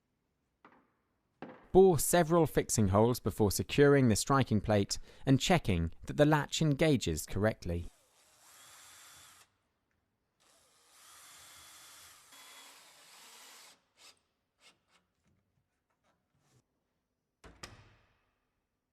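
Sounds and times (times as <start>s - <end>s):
faint power drill running: 8.0s - 9.6s, 10.4s - 13.8s.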